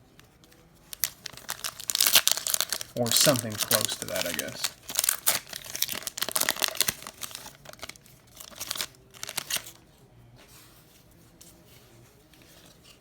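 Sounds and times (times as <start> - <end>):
plastic wrapper crinkling and tearing: 0.2 - 9.8
faint handling noise: 7.3 - 13.0.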